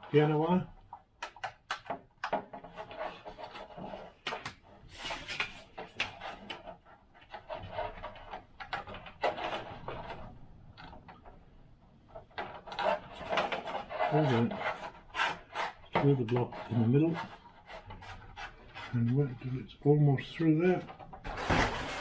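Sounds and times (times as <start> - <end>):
wire scraping through plastic: 0.0 - 22.0
sharp clicks and taps: 0.8 - 2.4.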